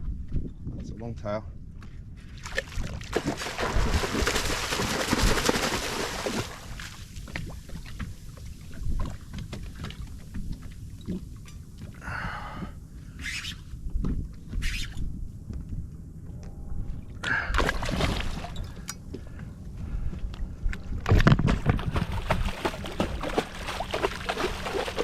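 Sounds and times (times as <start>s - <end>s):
water splashing hard: 2.5s - 7.1s, 17.6s - 18.5s, 21.6s - 25.0s.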